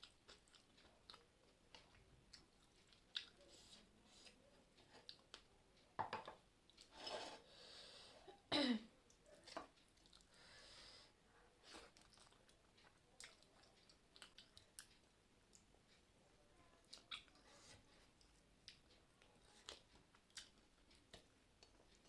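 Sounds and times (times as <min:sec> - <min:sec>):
person chewing: 0:00.0 - 0:05.5, 0:09.1 - 0:10.4, 0:11.7 - 0:16.0, 0:16.8 - 0:17.4, 0:18.0 - 0:22.0
person breathing: 0:07.4 - 0:08.3, 0:10.3 - 0:11.2.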